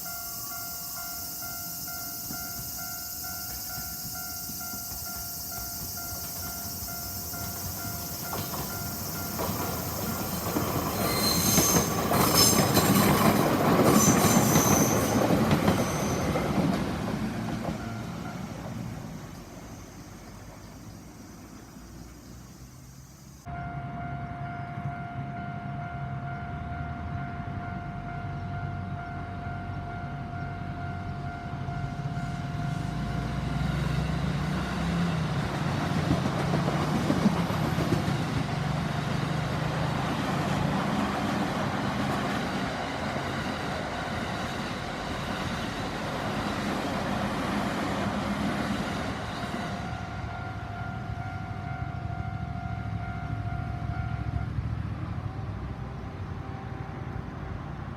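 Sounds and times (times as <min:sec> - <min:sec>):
train rumble: 0:00.0 - 0:57.9.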